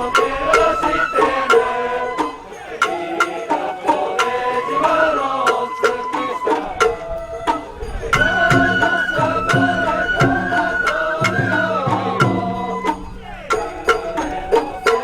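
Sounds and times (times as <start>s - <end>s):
wavering high melody: 0.0s - 15.0s
sharp percussive strikes: 5.4s - 15.0s
drums: 5.5s - 15.0s.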